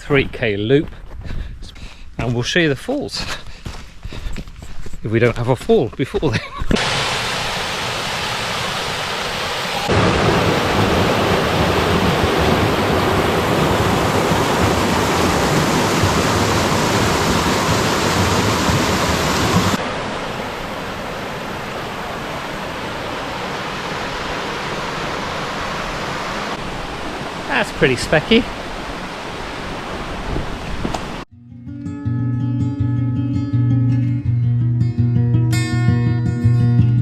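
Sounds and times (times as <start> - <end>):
waterfall rushing: 6.8 - 31.3.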